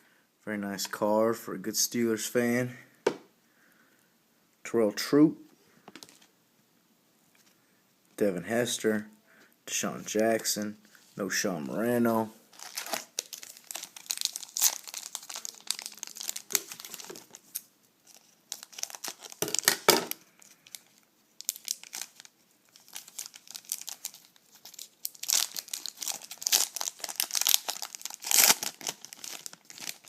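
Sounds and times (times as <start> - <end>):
crinkly wrapper being opened: 12.5 - 30.0.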